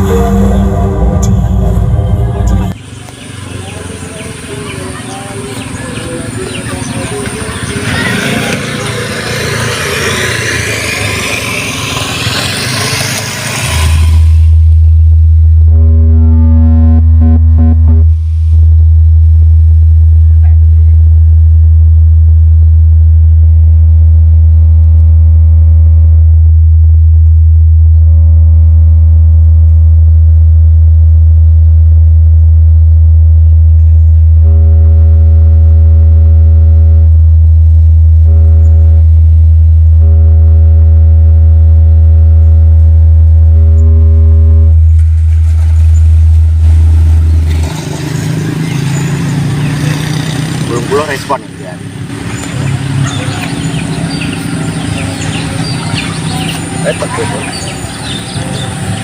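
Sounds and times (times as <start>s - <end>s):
loud low bass tone from subwoofers: 0.0s - 59.0s
outdoor noise: 0.0s - 59.0s
steady hum: 0.0s - 59.0s.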